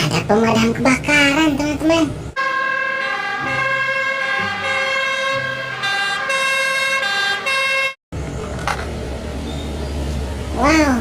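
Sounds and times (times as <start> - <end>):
toy electronic siren: 2.4 - 8.0.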